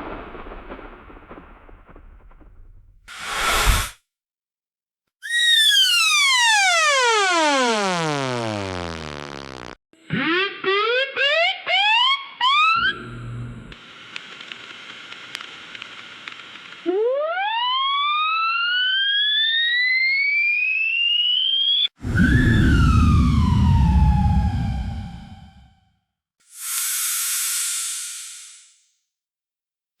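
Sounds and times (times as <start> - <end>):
falling electronic tone: 5.2 - 10.4.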